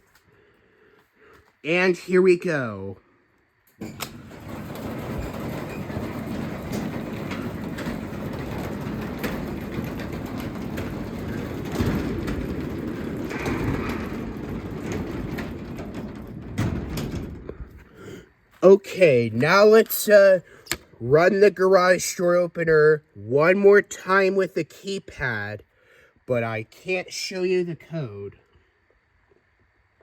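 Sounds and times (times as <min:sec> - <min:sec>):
garage door opener rumbling: 0:03.7 - 0:18.4
garage door bump: 0:03.8 - 0:18.2
garage door rattling on tracks: 0:03.8 - 0:18.2.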